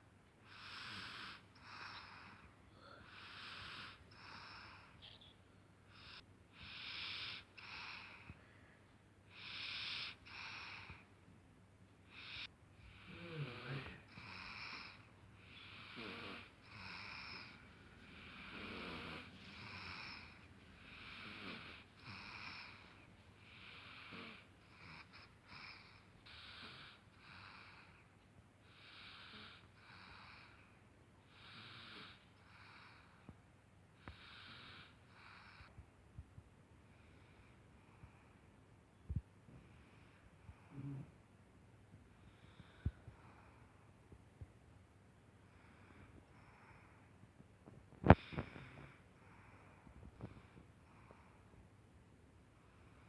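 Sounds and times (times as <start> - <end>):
soft snoring: 0.4 - 5.3, 5.9 - 8.5, 9.3 - 11.1, 12.1 - 33.4, 34.0 - 35.8, 39.1 - 41.2, 47.9 - 51.5.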